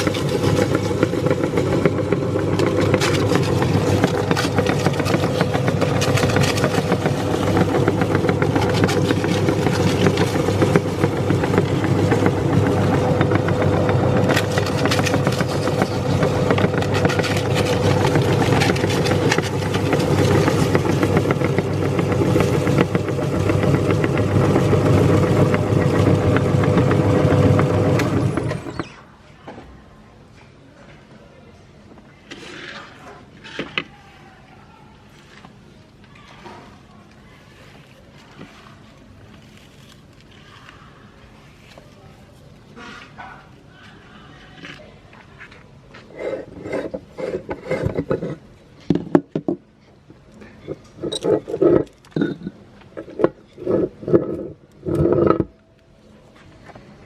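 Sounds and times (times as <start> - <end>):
electric meat grinder running: 0.0 - 28.9.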